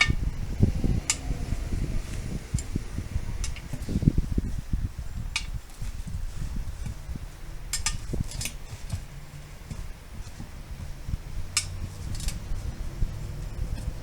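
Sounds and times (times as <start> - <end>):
low thumps and handling noise: 0.0 - 14.0
metal tools clinking on wheel: 7.7 - 9.0.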